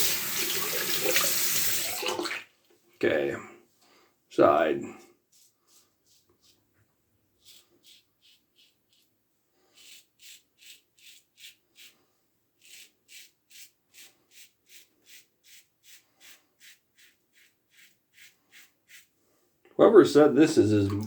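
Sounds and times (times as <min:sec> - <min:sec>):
razor scraping whiskers: 0:07.4 - 0:12.0, 0:12.6 - 0:19.1.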